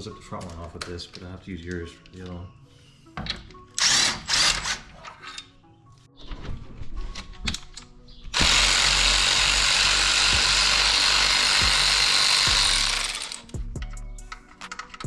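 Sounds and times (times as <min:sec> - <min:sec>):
cordless power tool running: 0:08.4 - 0:13.5.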